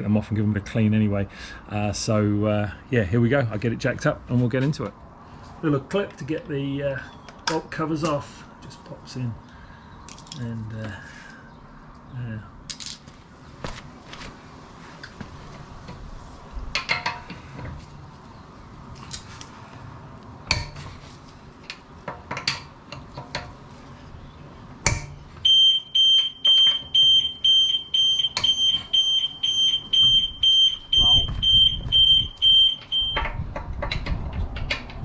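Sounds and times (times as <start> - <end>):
clicks and metal clanks: 16.7 - 17.8, 21.6 - 23.6, 28.2 - 30.3, 31.9 - 35.0
car alarm beeping: 25.4 - 33.4.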